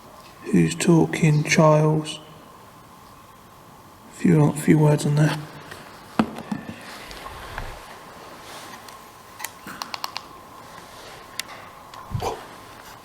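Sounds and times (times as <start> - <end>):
small clicks and taps: 8.9 - 10.3.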